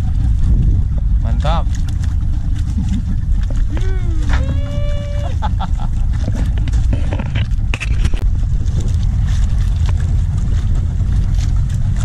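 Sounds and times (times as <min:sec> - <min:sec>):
boat engine rumble: 0:00.0 - 0:12.0
wind on microphone: 0:00.0 - 0:12.0
sharp clicks and knocks: 0:06.1 - 0:08.3.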